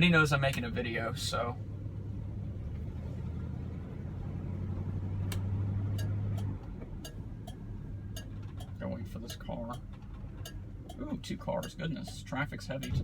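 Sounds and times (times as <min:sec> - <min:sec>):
car engine running heard from cabin: 0:00.0 - 0:13.0.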